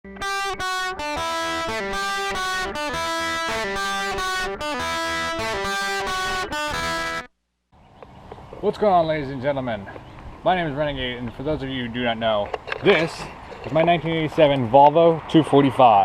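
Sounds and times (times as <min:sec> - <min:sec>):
electric guitar sustained notes: 0:00.1 - 0:07.3.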